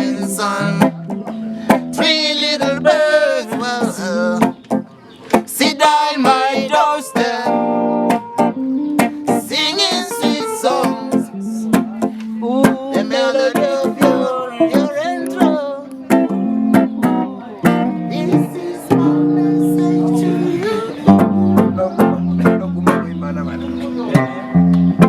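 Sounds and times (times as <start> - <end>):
person singing melody: 0.0 - 4.6, 5.4 - 22.6
strummed guitar: 0.0 - 25.0.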